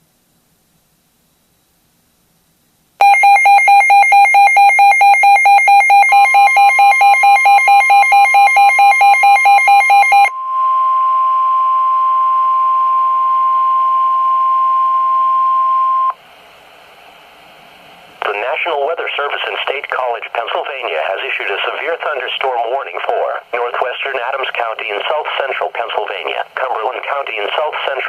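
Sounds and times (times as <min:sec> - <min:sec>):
rapid alarm beeps: 0:03.0 - 0:10.5
radio hiss: 0:18.0 - 0:28.0.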